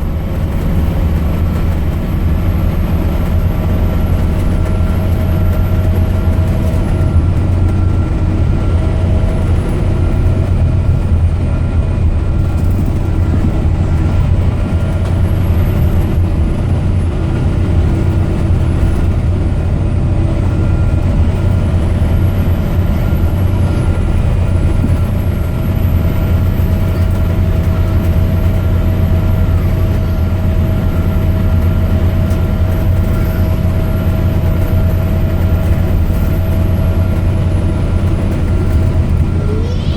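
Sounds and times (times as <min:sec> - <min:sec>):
bus diesel engine running: 0:00.0 - 0:39.9
faint high whine: 0:39.2 - 0:39.9.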